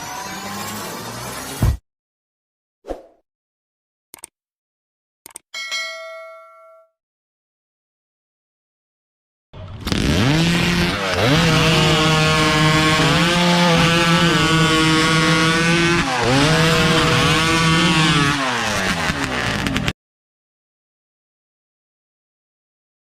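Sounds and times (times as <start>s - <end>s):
chainsaw engine revving: 9.6s - 19.9s.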